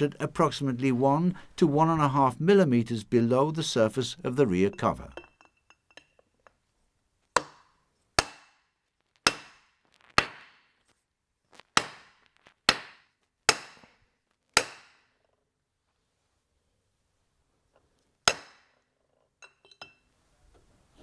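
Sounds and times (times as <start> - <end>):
hammer striking metal bearing: 7.4 - 8.6, 9.3 - 9.6, 12.7 - 13.9, 14.6 - 15.1, 18.3 - 18.7.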